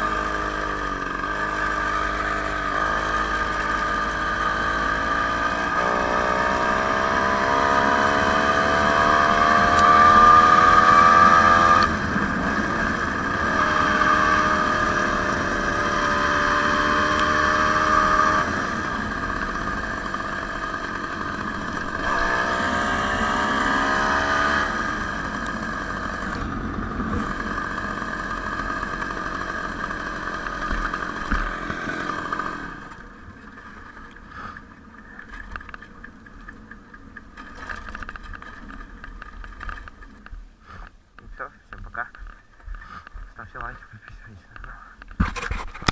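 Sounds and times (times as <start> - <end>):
two-stroke engine revving: 0.0 - 35.8.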